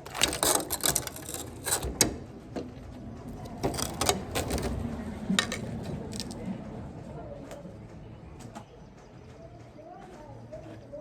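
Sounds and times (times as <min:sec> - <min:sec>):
clicks and knocks of hard objects: 0:00.0 - 0:02.2, 0:03.3 - 0:06.4.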